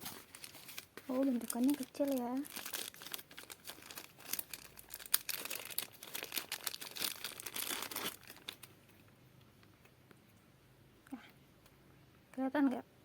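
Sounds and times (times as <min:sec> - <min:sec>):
packaging crinkling: 0:00.0 - 0:08.8.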